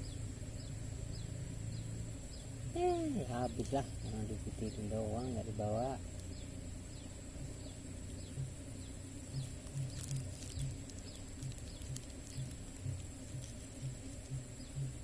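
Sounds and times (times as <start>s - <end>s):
faint bird chirps: 0.0s - 15.0s
soft low pulses: 0.0s - 15.0s
steady high-pitched drone: 0.0s - 15.0s.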